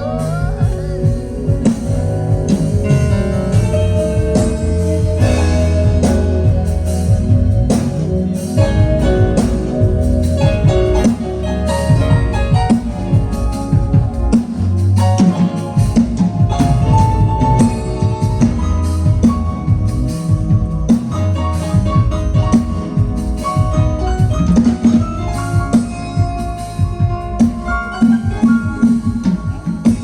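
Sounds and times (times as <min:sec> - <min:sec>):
band playing instrumental music: 0:00.0 - 0:30.0
drum strikes: 0:00.0 - 0:30.0.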